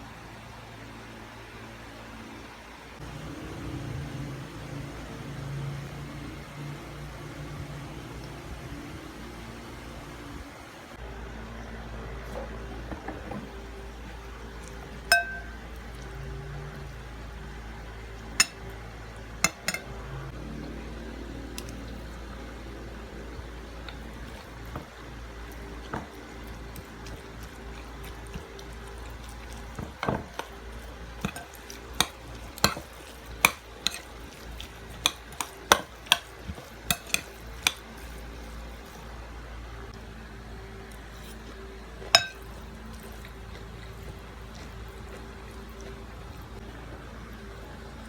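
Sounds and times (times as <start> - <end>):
steady low hum: 0.0 - 48.0
spoon clinking against dish: 15.1 - 15.6, 19.4 - 19.9, 31.2 - 34.2, 34.9 - 37.8, 42.1 - 42.5.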